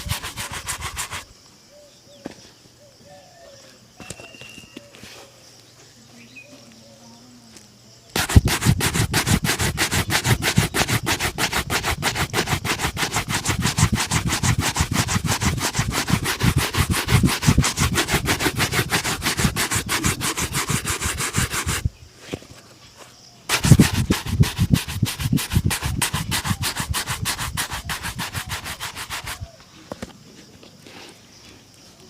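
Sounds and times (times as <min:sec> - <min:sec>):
brush rubbing on leather shoe: 0:00.0 - 0:01.3, 0:08.2 - 0:21.9, 0:23.5 - 0:29.6.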